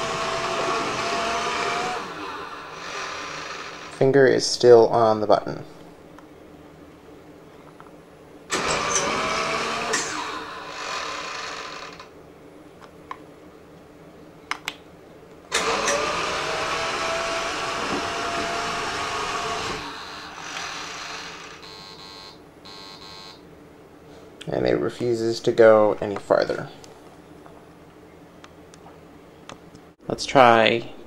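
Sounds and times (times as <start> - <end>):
robot vacuum motors whining: 0.0 - 4.0, 8.5 - 12.1, 15.5 - 22.3
clicks: 14.5 - 14.8.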